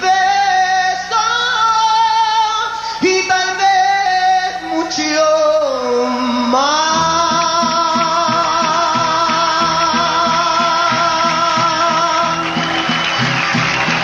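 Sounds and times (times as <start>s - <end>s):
person singing long notes: 5.2s - 12.5s
strummed rhythm: 6.9s - 14.0s.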